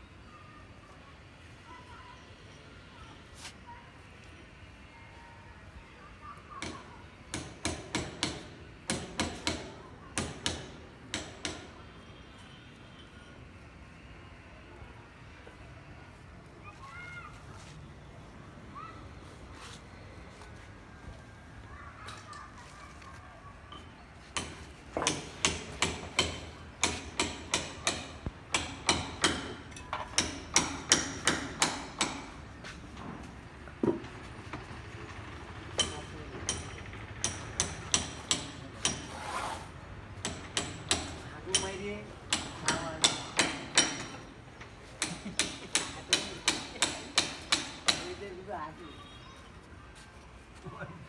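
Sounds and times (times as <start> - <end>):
hammer strikes: 6.6 - 11.8, 24.4 - 32.4, 35.7 - 39.2, 40.2 - 44.4, 45.0 - 48.2.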